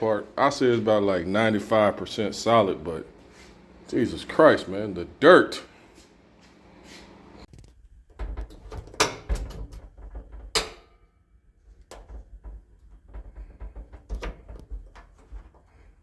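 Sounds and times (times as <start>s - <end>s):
sharp knocks and clunks: 8.1s - 11.0s, 11.9s - 15.7s.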